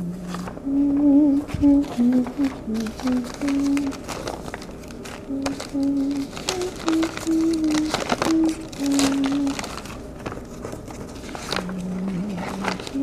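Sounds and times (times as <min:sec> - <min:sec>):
person humming: 0:00.0 - 0:04.2, 0:05.2 - 0:09.8, 0:11.5 - 0:13.0.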